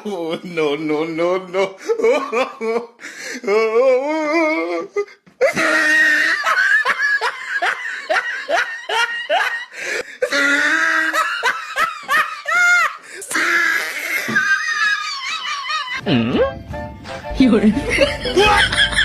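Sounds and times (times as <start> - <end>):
person laughing hard: 5.4 - 16.5, 17.8 - 19.0.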